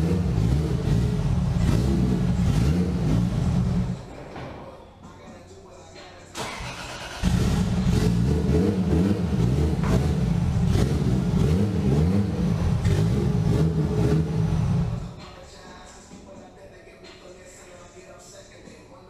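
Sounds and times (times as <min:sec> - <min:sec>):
car engine revving: 0:00.0 - 0:04.1, 0:06.4 - 0:15.2.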